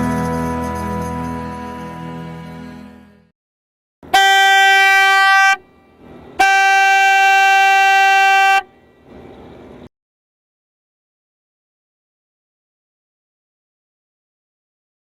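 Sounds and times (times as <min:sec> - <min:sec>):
air horn blasts: 0:04.0 - 0:08.8.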